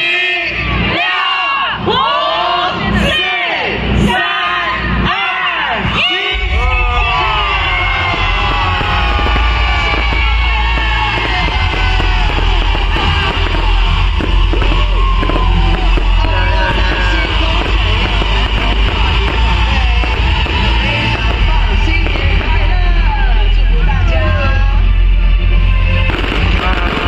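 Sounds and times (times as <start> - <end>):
crowd yelling and singing: 0.0 - 27.0
loud music: 0.0 - 27.0
heavy low rumble: 5.9 - 27.0.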